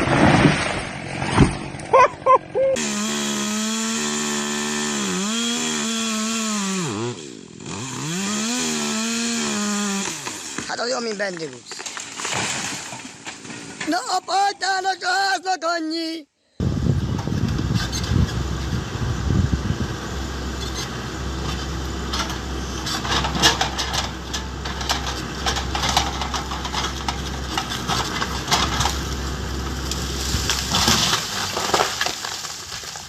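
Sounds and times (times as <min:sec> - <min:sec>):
sharp cracks and crunches: 0:09.9 - 0:14.0, 0:20.6 - 0:33.0
motor humming: 0:16.6 - 0:30.8.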